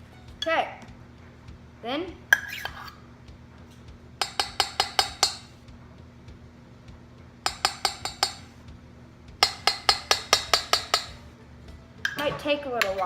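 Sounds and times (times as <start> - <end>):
utensil clinking against a bowl: 4.2 - 5.6, 7.4 - 8.6, 9.4 - 11.2, 12.0 - 13.0.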